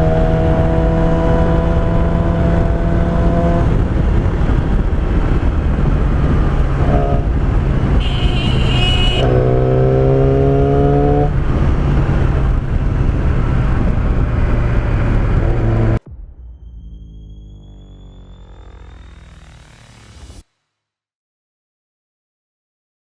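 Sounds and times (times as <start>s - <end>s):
motorcycle engine running: 0.0s - 16.0s.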